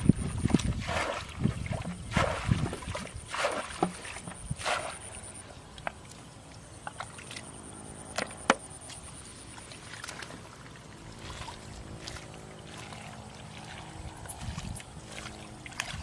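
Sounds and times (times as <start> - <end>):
faint steady hum: 0.0 - 16.0
water splashing and trickling: 0.0 - 16.0.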